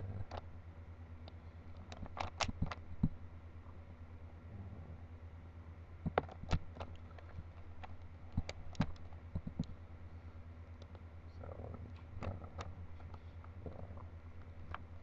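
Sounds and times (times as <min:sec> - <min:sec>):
steady low hum: 0:00.0 - 0:15.0
puzzle cube plastic clicks: 0:01.9 - 0:02.8.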